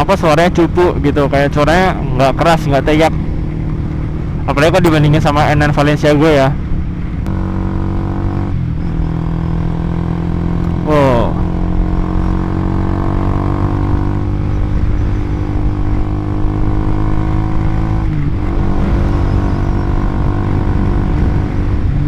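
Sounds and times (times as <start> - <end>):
motorcycle engine cruising: 0.0 - 22.0.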